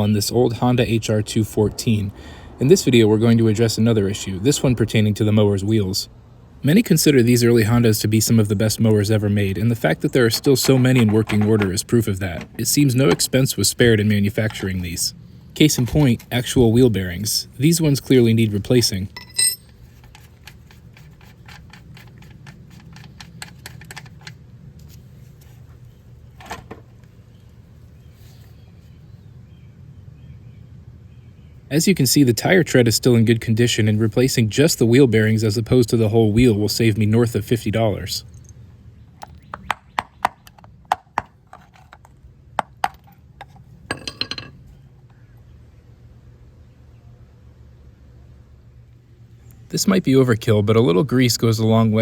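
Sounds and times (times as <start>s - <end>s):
low steady hum: 0.0s - 52.0s
ringing metallic clinks: 19.1s - 19.8s.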